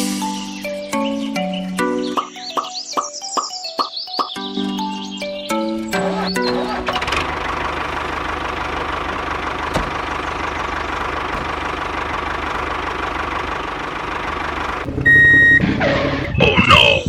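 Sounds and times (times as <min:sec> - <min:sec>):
tractor engine chugging: 0:05.8 - 0:17.0.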